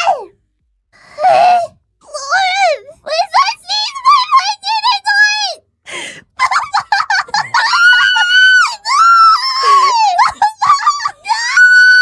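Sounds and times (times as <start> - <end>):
woman squealing: 6.4 - 12.0.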